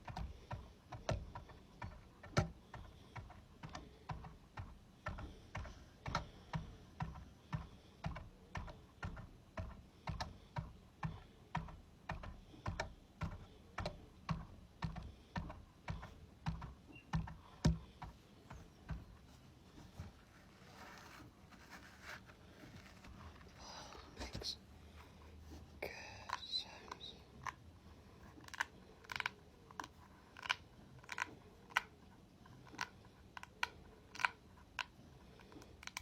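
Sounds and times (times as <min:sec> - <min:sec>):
ball clicking: 0:00.0 - 0:19.2, 0:28.4 - 0:32.0, 0:32.6 - 0:36.0.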